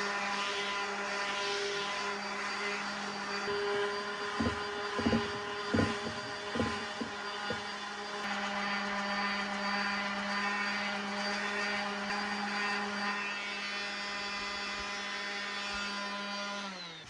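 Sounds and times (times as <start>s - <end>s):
orbital sander running: 0.0s - 17.0s.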